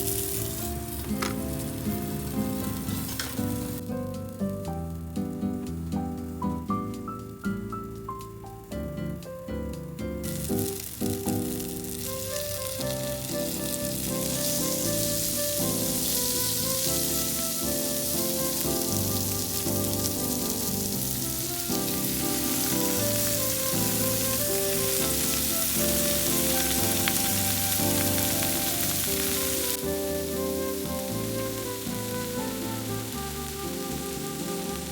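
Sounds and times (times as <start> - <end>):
food sizzling in a pan: 0.0 - 6.4, 10.2 - 34.9
light background music: 0.0 - 34.9.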